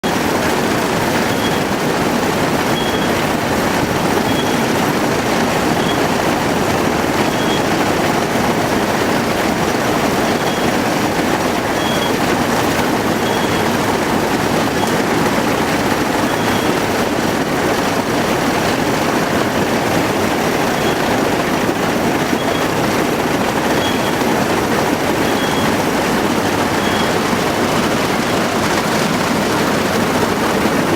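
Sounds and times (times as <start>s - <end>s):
combine harvester running: 0.0s - 30.9s.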